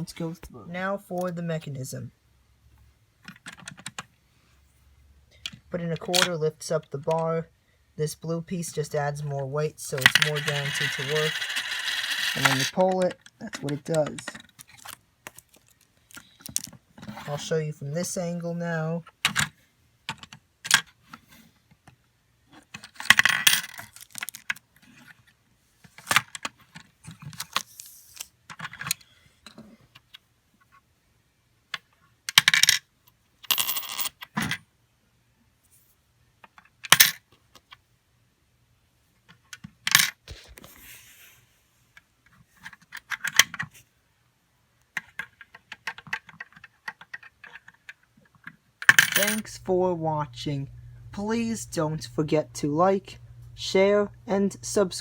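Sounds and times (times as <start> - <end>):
coins dropping: 10.0 - 12.8, 23.1 - 24.4, 33.4 - 34.2, 48.8 - 49.6.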